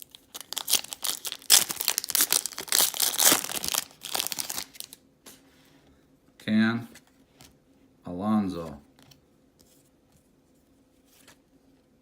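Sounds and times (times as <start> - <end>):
wrapper tearing and crinkling: 0.0 - 5.0.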